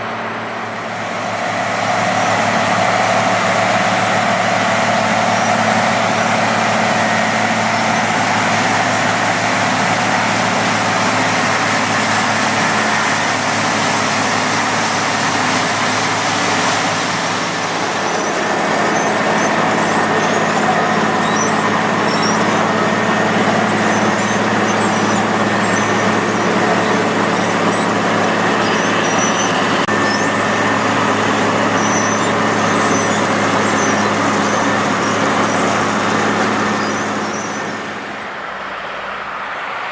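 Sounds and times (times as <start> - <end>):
milling machine running: 0.0 - 38.4
heavy diesel engines: 0.0 - 39.9.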